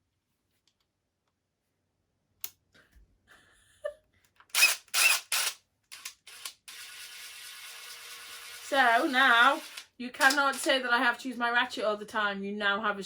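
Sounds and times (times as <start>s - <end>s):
drill handling clicks: 4.4s - 10.7s.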